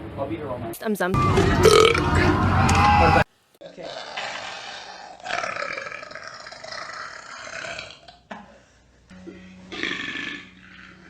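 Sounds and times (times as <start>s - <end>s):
man burping: 3.6s - 11.0s.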